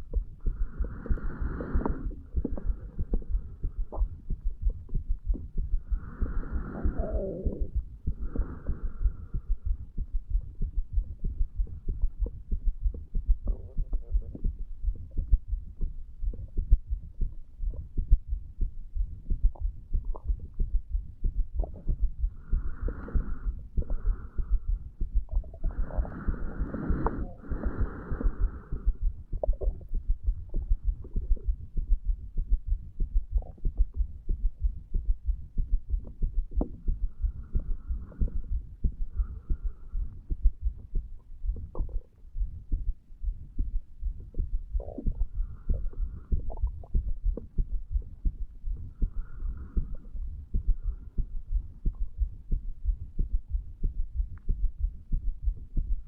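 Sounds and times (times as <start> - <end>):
heartbeat thumps: 0.0 - 56.0
low hum: 0.0 - 56.0.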